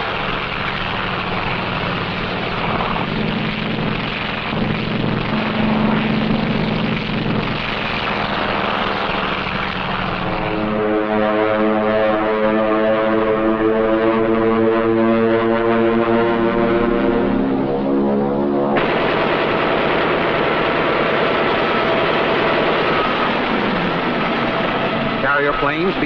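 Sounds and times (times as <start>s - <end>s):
propeller aircraft engines running: 0.0s - 26.0s
low horn-like tone: 10.5s - 18.9s.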